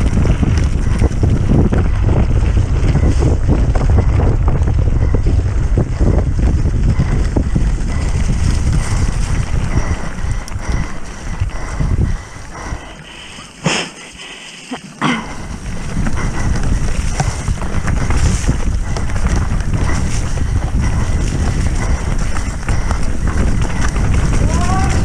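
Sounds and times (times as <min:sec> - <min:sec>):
wind on microphone: 0:00.0 - 0:13.8, 0:15.2 - 0:25.0
mountain bike rattling: 0:00.0 - 0:25.0.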